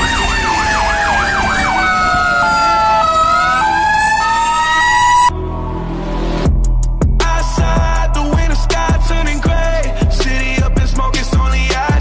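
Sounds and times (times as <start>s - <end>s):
fire truck sirens: 0.0s - 6.3s.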